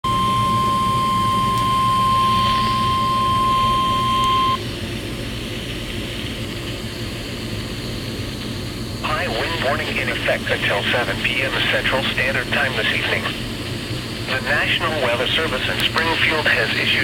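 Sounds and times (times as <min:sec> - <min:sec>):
steady alarm tone: 0:00.0 - 0:04.6
radio hiss and hum: 0:08.9 - 0:17.0.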